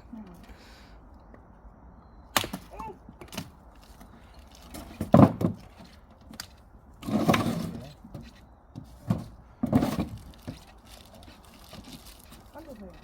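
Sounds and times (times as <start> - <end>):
axe splitting firewood: 2.3 - 8.4, 9.0 - 13.0
small wood knocks: 2.4 - 13.0.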